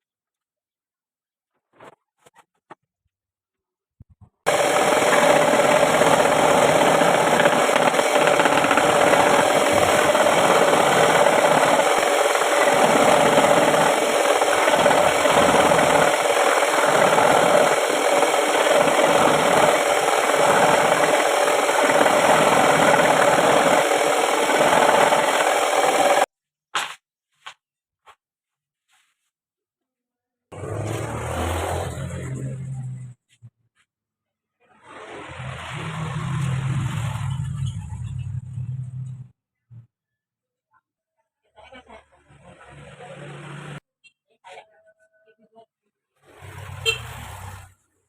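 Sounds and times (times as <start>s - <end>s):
power tool cutting wood: 4.5s - 26.3s, 30.6s - 32.6s.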